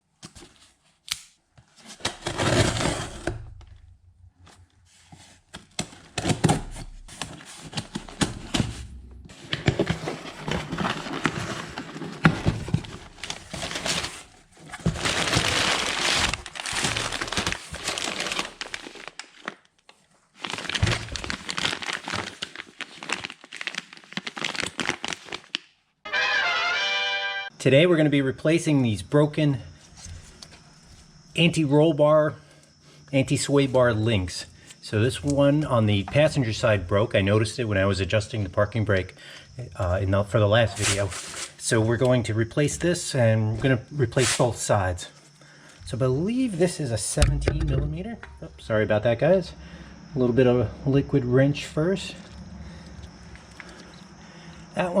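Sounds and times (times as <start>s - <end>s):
plastic crinkling and rustling: 9.3s - 25.7s
sharp clicks and knocks: 47.2s - 48.4s.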